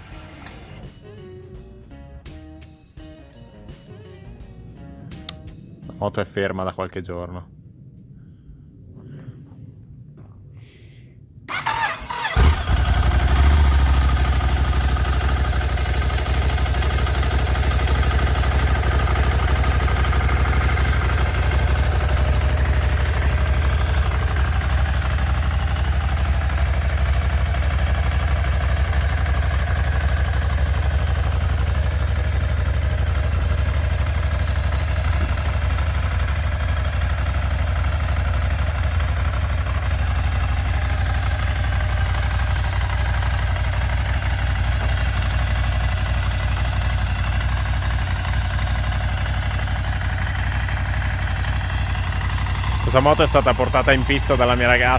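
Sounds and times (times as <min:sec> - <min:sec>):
starter motor cranking: 0:11.5 - 0:16.6
motorcycle engine idling: 0:11.5 - 0:54.9.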